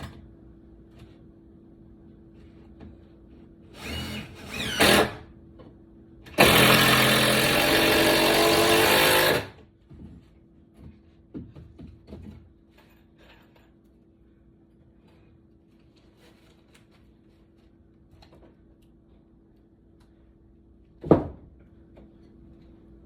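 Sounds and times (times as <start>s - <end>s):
handheld power tool running: 3.8s - 5.2s, 6.3s - 9.6s.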